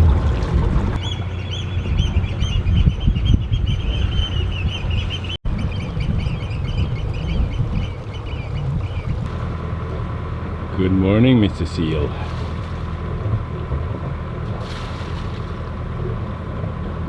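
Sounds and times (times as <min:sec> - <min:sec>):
birds calling: 0:00.0 - 0:10.6
boat engine running: 0:00.0 - 0:17.0.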